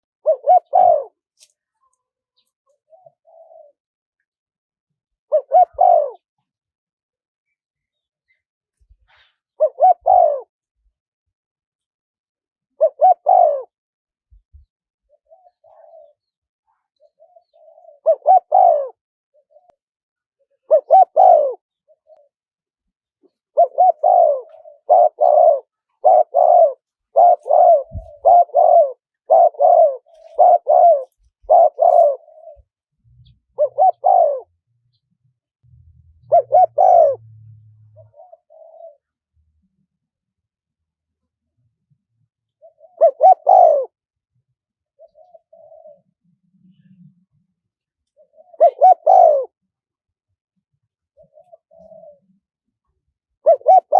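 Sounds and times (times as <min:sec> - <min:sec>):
dove cooing: 0:00.0 - 0:01.4, 0:02.4 - 0:03.8, 0:05.3 - 0:06.4, 0:09.1 - 0:10.5, 0:12.8 - 0:19.8, 0:20.4 - 0:22.4, 0:23.2 - 0:34.7, 0:35.7 - 0:39.2, 0:42.5 - 0:44.1, 0:44.8 - 0:47.3, 0:48.1 - 0:49.6, 0:51.0 - 0:52.6, 0:53.4 - 0:53.9.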